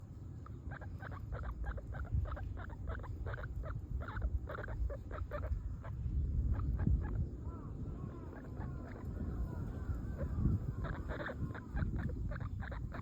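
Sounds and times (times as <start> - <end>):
guinea pig squeaking: 0.5 - 7.2, 8.4 - 9.1, 10.2 - 13.0.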